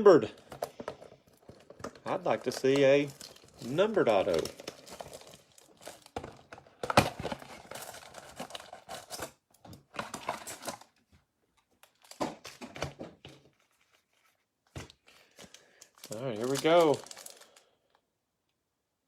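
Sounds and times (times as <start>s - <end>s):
packaging crinkling: 0.2s - 11.0s, 14.9s - 18.0s
cardboard packaging tearing: 1.4s - 11.0s, 16.0s - 17.6s.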